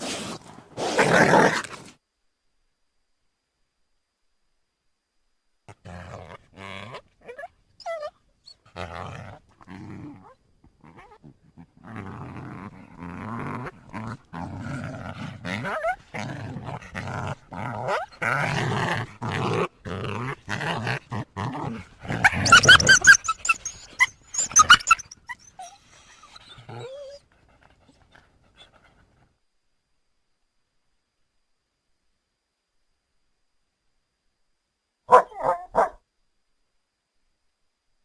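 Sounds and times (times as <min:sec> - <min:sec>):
wolf growling and snarling: 0:00.0 - 0:02.0, 0:05.7 - 0:29.1
high-pitched cries: 0:22.4 - 0:26.1.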